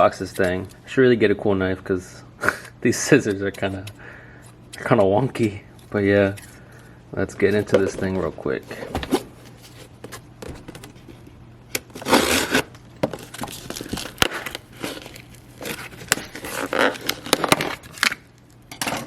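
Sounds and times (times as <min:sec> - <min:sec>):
steady low hum: 0:00.0 - 0:19.0
cardboard crinkling: 0:07.4 - 0:18.6
tape tearing: 0:08.7 - 0:18.7.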